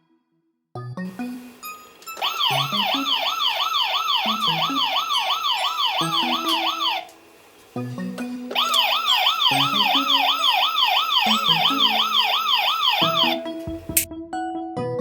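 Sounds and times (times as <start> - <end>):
low electronic tune: 1.1 - 14.1
fast wailing toy siren: 2.1 - 7.2, 8.5 - 13.5.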